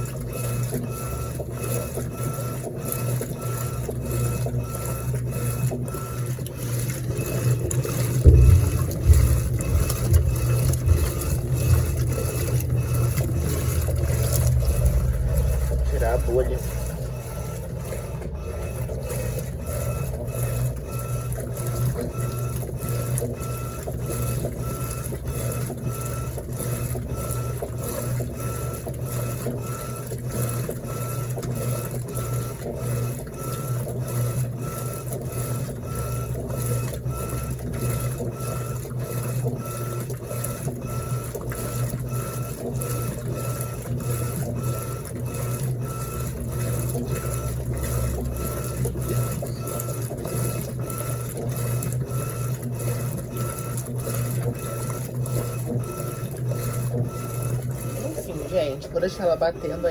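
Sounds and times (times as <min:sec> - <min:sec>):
washing machine agitating: 0:00.0 - 0:59.9
faint pulsing whine: 0:08.2 - 0:21.0.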